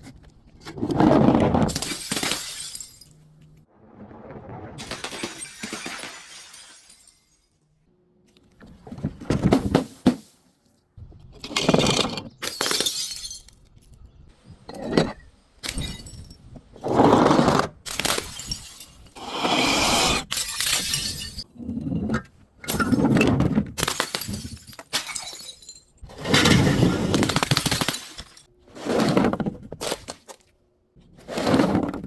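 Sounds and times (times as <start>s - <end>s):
glass bottle crushing: 4.8s - 7.5s, 20.3s - 21.5s, 23.8s - 28.4s.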